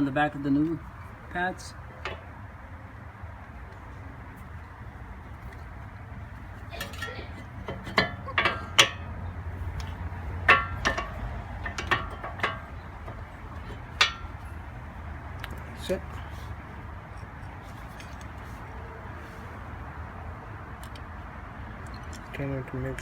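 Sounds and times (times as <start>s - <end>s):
steady low hum: 0.0s - 20.9s
metal brake pads clinking: 0.6s - 2.4s, 5.3s - 19.6s.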